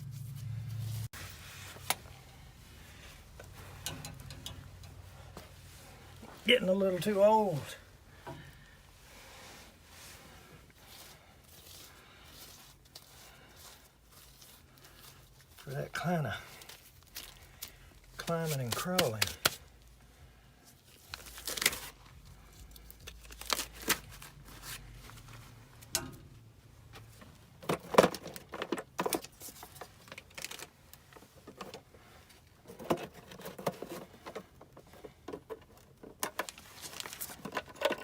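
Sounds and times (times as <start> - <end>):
rustling: 0.0 - 27.5, 28.5 - 38.0
knocks and scrapes: 31.1 - 38.0.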